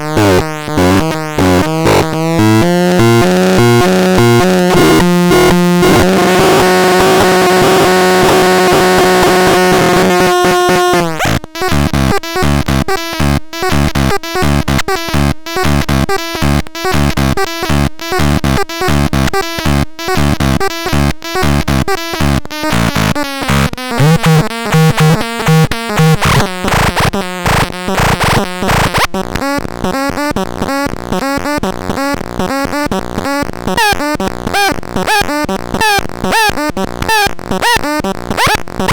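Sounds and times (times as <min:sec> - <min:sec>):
low synthesizer line: 0:00.0 - 0:28.8
synthesizer rhythmic repeated notes: 0:00.0 - 0:38.9.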